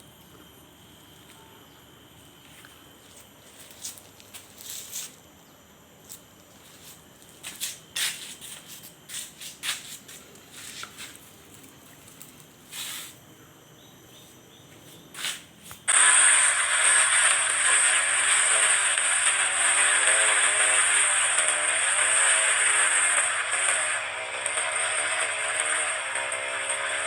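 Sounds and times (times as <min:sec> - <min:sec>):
rustling and scraping handling noises: 0:02.4 - 0:05.2, 0:06.0 - 0:13.2
small engine running loud: 0:15.3 - 0:27.0.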